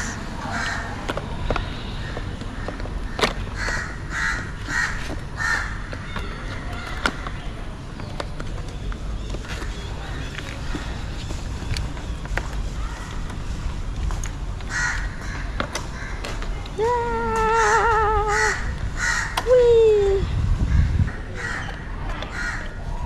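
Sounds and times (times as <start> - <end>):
crow cawing: 3.6 - 5.8, 14.7 - 16.2, 18.3 - 19.4, 22.3 - 22.7.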